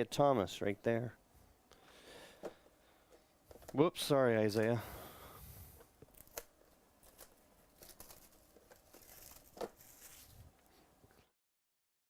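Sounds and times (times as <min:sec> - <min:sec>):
card packaging rustling and crinkling: 0:06.0 - 0:10.7.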